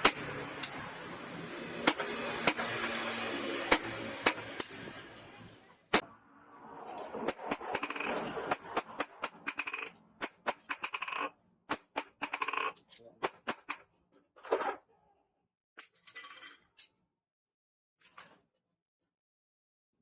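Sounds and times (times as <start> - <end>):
sharp metallic clicks and clinks: 0.0 - 1.1, 1.8 - 5.0
metal scraping bursts: 0.0 - 6.0.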